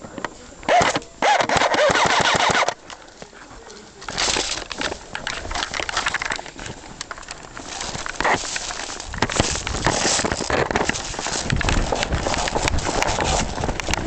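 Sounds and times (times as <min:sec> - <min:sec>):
rustling and clatter: 0:00.0 - 0:14.0
airsoft rifle full-auto burst: 0:00.7 - 0:02.8.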